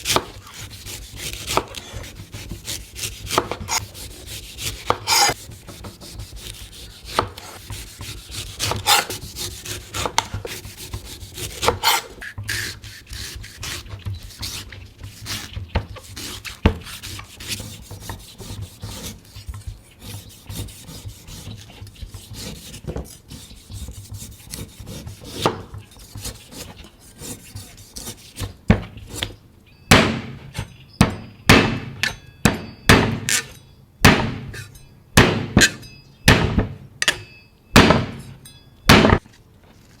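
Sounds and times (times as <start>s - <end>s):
knife scraping coconut husk: 0.0s - 29.4s
knife chopping coconut: 0.0s - 37.2s, 37.8s - 39.2s.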